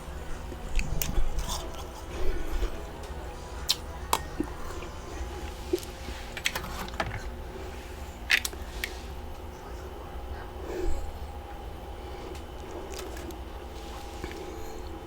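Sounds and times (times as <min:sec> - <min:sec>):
ice being chewed: 0:00.0 - 0:09.0, 0:12.2 - 0:15.0
steady low hum: 0:00.0 - 0:15.0.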